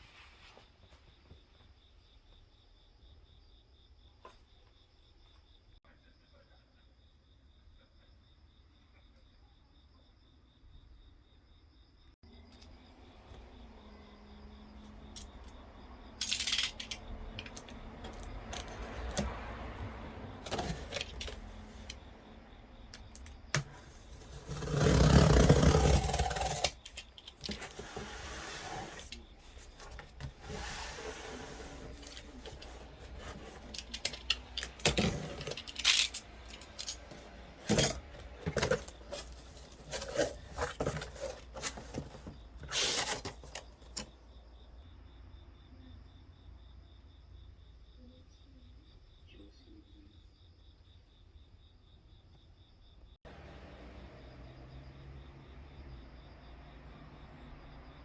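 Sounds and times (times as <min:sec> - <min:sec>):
metal computer parts clinking: 0:16.2 - 0:19.2, 0:32.0 - 0:44.1.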